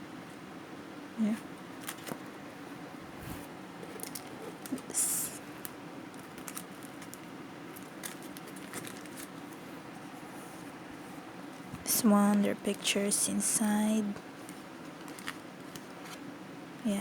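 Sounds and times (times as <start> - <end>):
low room hum: 0.0 - 17.0
packaging rustle: 3.8 - 9.6, 14.3 - 16.3.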